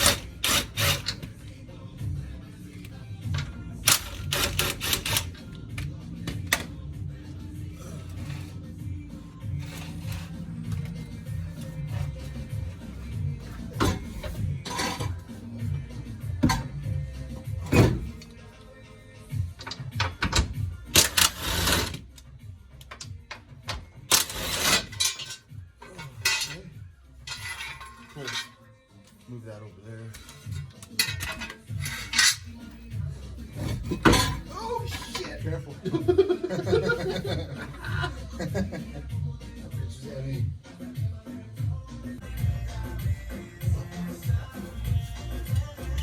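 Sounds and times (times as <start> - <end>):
music with deep bass beat: 0.0 - 18.4, 35.7 - 46.0.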